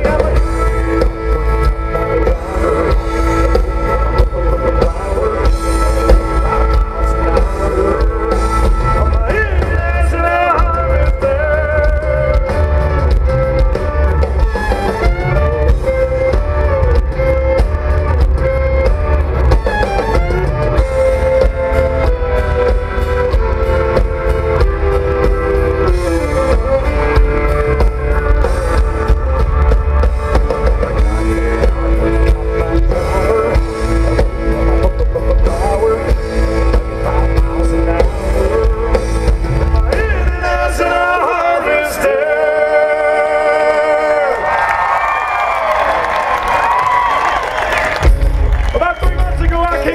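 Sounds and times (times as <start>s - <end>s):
person singing: 0.0s - 12.7s, 30.4s - 44.4s
electric guitar: 0.0s - 41.3s
drums: 0.0s - 49.9s.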